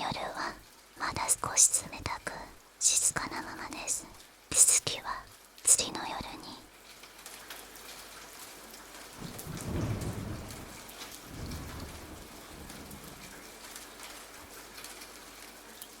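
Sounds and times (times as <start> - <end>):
steady rain falling: 0.0 - 16.0
thunder rumble: 9.2 - 13.6.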